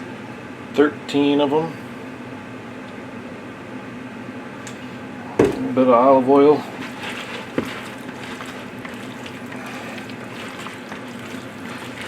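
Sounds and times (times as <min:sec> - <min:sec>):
oil pouring trickle: 0:06.8 - 0:12.0.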